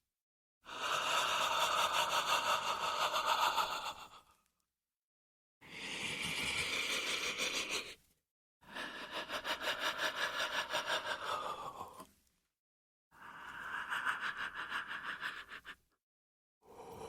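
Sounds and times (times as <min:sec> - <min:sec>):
shuddering human breaths: 0:00.7 - 0:04.4, 0:08.6 - 0:12.3, 0:16.6 - 0:17.0.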